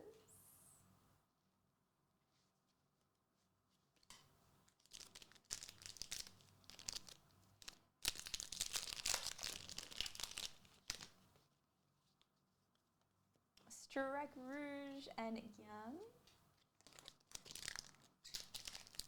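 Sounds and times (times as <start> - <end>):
wrapper tearing and crinkling: 4.1 - 11.2, 16.7 - 19.0.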